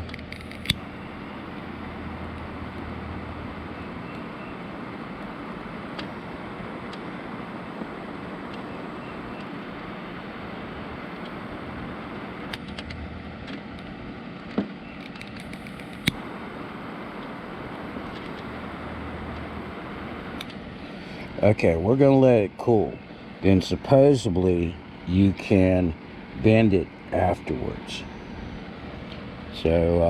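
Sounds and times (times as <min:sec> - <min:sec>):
torch lighter hissing: 0:00.3 - 0:12.8, 0:15.0 - 0:21.5
sharp clicks: 0:15.0 - 0:16.2.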